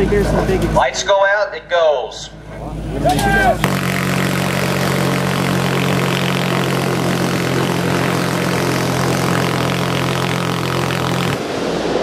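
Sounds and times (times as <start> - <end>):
minigun firing: 3.6 - 11.4.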